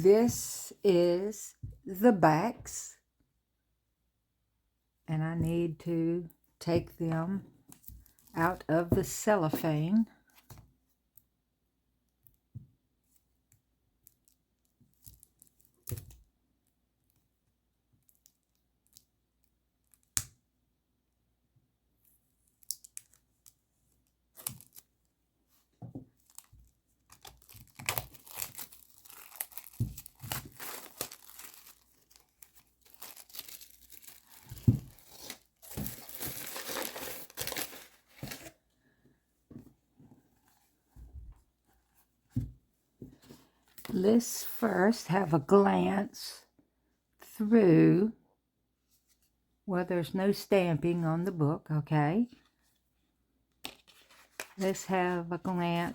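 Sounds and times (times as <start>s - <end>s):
cellophane tearing and crinkling: 26.2s - 38.5s.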